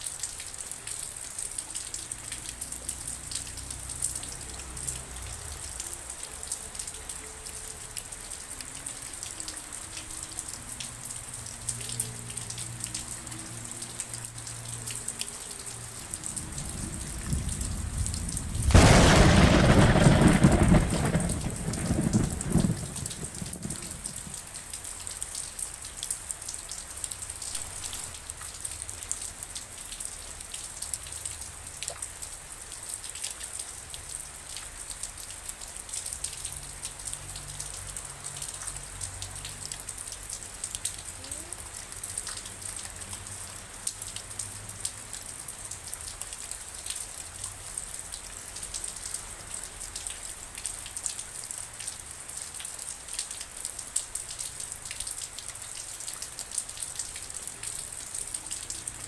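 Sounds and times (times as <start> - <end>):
rain falling: 0.0 - 59.0
raindrop ticks: 0.0 - 59.0
loud thunder roll: 16.1 - 24.4.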